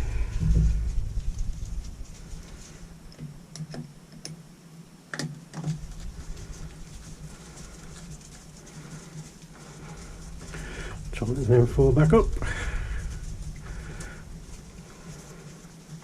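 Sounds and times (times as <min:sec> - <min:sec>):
faint steady hum: 0:00.0 - 0:16.0
small parts clicking and tapping: 0:03.1 - 0:04.4.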